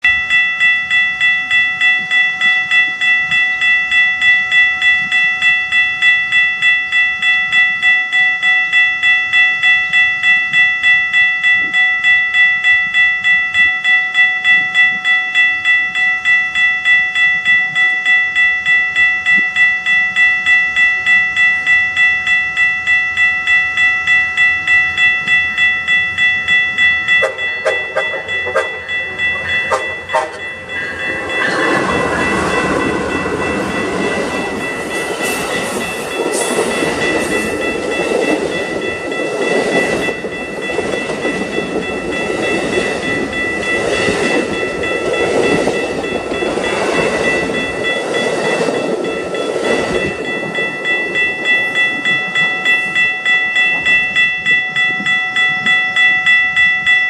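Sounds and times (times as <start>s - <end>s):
crossing bell ringing: 0.0s - 57.0s
train rumble: 9.6s - 57.0s.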